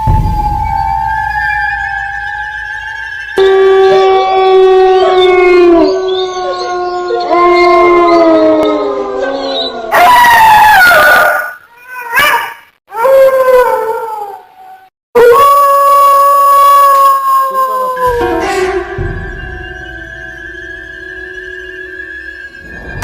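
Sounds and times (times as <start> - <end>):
dogs howling: 0.4 - 14.6, 15.2 - 18.5.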